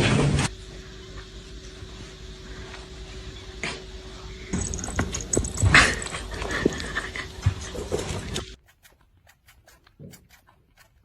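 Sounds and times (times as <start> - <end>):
knocks and rustling: 4.6 - 8.6.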